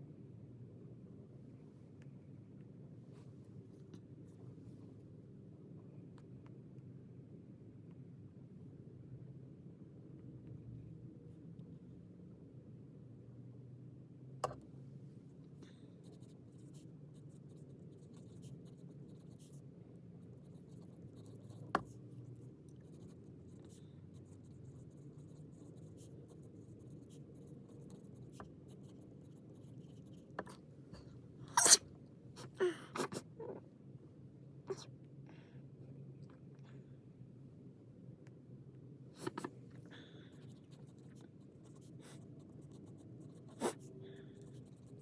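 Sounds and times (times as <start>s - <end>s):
pen scratching on paper: 16.0s - 19.6s, 20.2s - 30.6s, 31.6s - 31.8s, 39.2s - 39.5s, 40.3s - 45.0s
loud sneeze: 31.6s - 31.8s.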